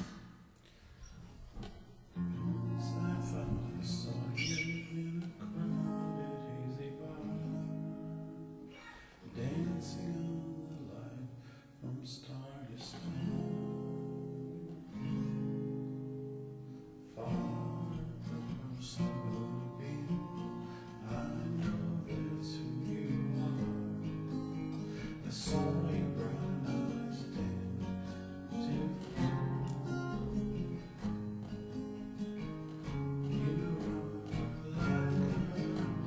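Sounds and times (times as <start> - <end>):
acoustic guitar chords: 1.6 - 36.0.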